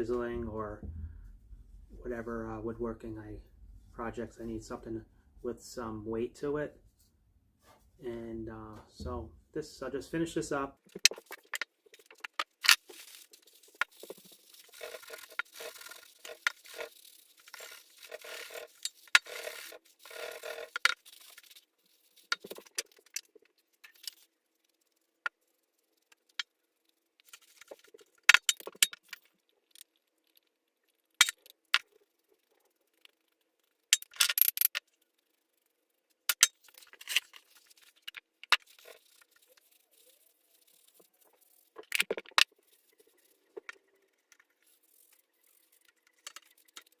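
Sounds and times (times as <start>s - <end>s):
clicks and clinks: 33.9s - 34.8s.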